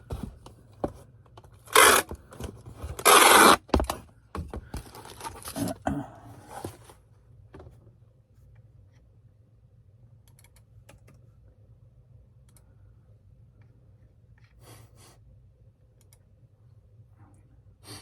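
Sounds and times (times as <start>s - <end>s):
steady low hum: 0.0s - 18.0s
keyboard and mouse clicks: 10.2s - 11.2s, 16.0s - 16.3s.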